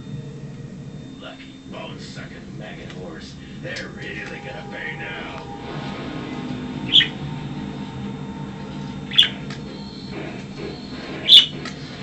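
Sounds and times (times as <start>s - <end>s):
low background hum: 0.0s - 12.0s
budgerigar chirps: 6.9s - 7.2s, 9.1s - 9.4s, 11.2s - 11.6s.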